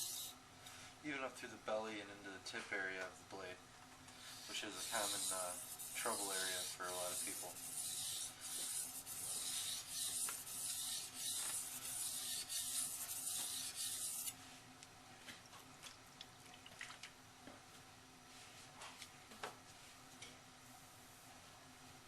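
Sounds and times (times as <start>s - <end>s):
knife blade on whetstone: 0.0s - 0.3s, 4.4s - 14.4s.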